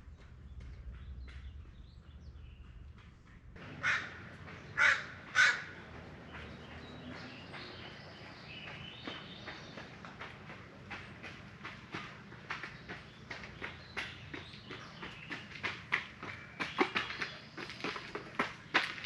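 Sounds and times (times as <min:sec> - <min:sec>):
light footsteps and scuffs: 0:00.1 - 0:19.0
crow cawing: 0:03.6 - 0:05.8.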